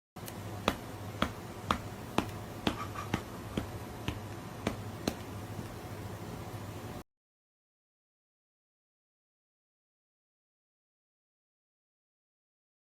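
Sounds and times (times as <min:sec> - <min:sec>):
steady low hum: 0:00.2 - 0:07.0.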